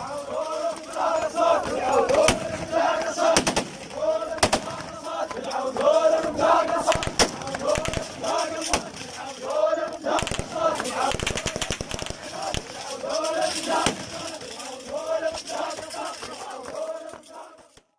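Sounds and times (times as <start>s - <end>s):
men chanting in unison: 0.0s - 17.9s
rapid gunfire: 3.3s - 3.8s, 4.4s - 4.9s, 6.8s - 9.1s, 10.1s - 12.9s.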